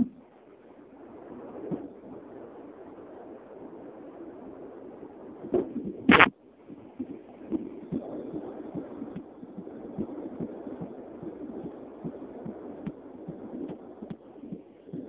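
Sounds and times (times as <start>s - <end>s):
fetal heartbeat: 5.4s - 15.0s.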